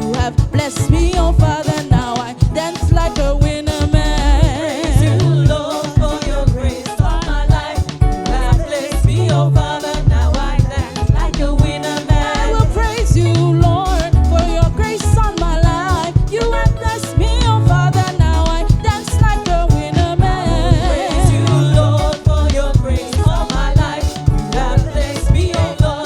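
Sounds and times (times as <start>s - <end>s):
drum beat: 0.0s - 26.0s
heavy bass: 0.0s - 26.0s
person singing: 0.0s - 26.0s.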